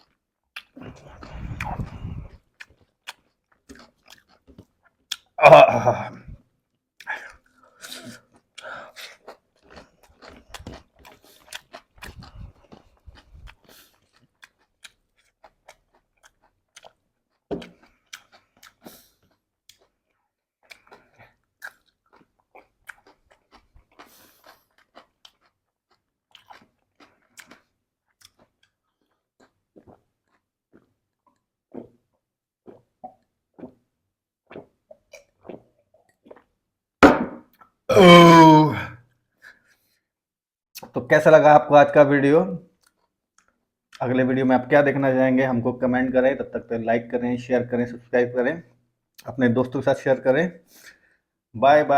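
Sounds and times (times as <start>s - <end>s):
chewing crunchy snack: 0.0s - 5.4s, 7.0s - 33.9s, 34.5s - 36.6s, 42.6s - 44.0s.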